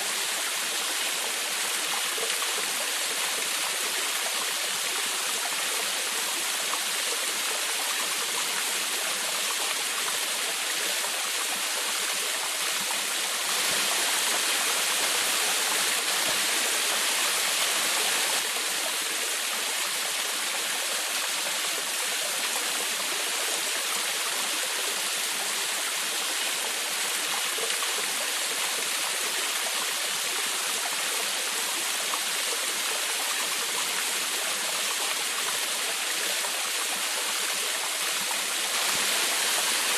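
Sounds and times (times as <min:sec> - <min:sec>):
waterfall splashing: 0:11.4 - 0:23.8, 0:37.2 - 0:39.9.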